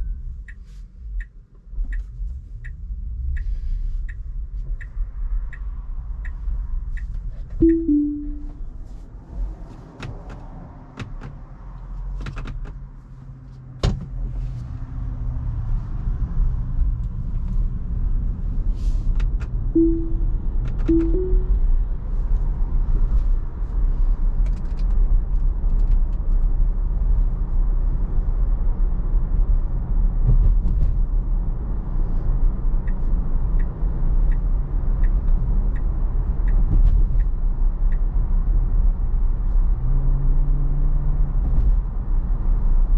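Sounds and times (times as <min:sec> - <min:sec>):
road and tyre rumble in car: 0:00.0 - 0:42.9
short chimes: 0:07.6 - 0:08.6, 0:19.8 - 0:21.6.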